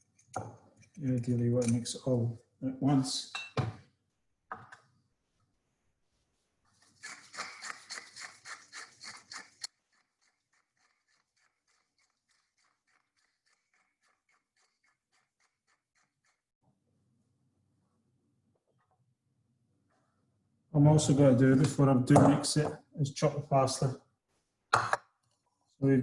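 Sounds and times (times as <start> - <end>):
stirring strokes against a bowl: 6.6 - 16.2.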